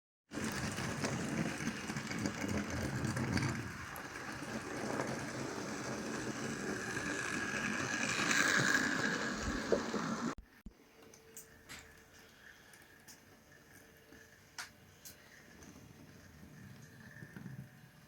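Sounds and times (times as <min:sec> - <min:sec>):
wheels clattering on rail: 0:00.4 - 0:10.4.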